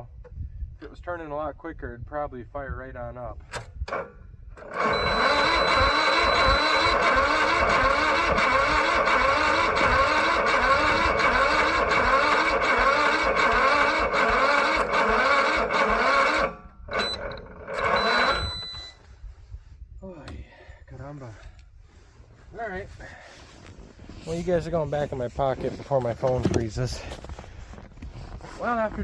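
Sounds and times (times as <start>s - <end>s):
starter cranking engine: 3.5s - 19.0s.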